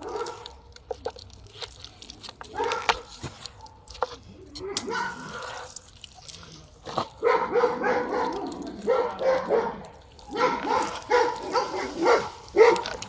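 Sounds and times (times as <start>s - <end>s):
dog barking: 0.0s - 0.5s, 2.5s - 3.0s, 4.7s - 5.6s, 7.2s - 13.0s.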